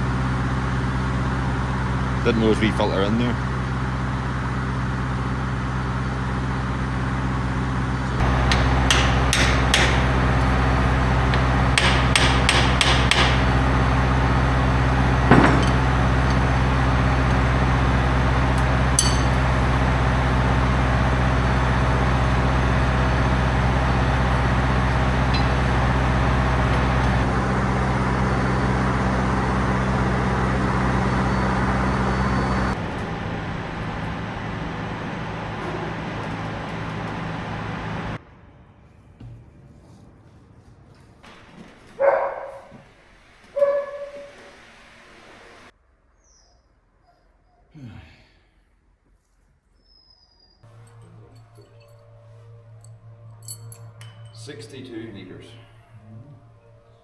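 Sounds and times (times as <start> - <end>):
low machine drone: 0.0 - 46.1, 50.6 - 57.0
sharp taps on metal: 8.5 - 10.0, 11.3 - 13.4.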